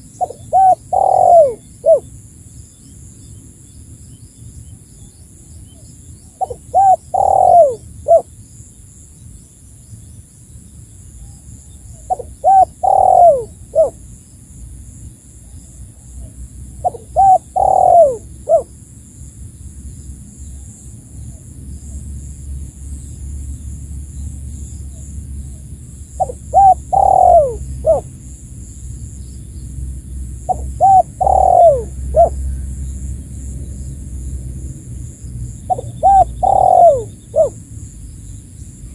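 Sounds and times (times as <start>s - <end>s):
dove cooing: 0.0s - 2.1s, 6.4s - 8.3s, 12.0s - 14.0s, 16.2s - 18.7s, 25.5s - 28.1s, 30.4s - 32.7s, 35.6s - 37.6s.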